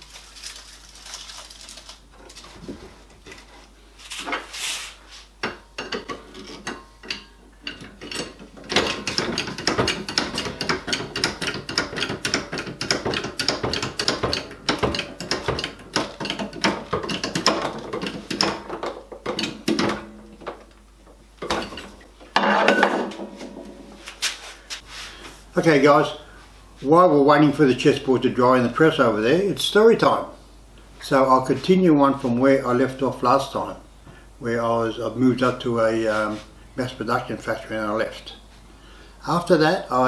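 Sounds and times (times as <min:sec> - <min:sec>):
wooden knocks: 0:08.7 - 0:20.7.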